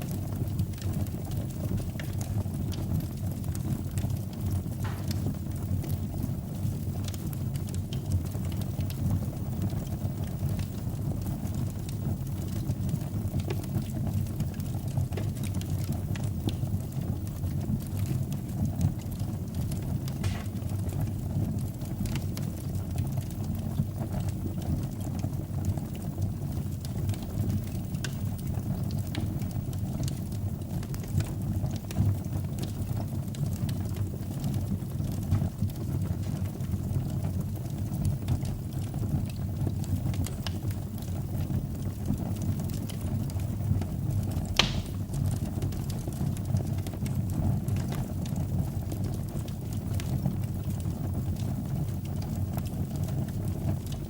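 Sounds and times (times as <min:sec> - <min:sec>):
fire crackling and popping: 0:00.0 - 0:54.0
low rumble of flames: 0:00.0 - 0:54.0.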